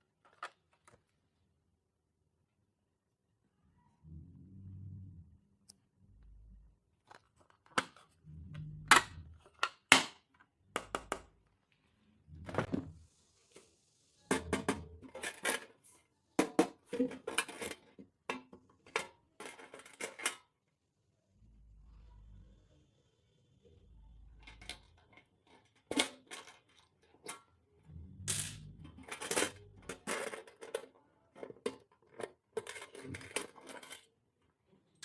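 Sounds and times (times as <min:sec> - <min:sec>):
plastic clicks and taps: 0:10.8 - 0:11.3.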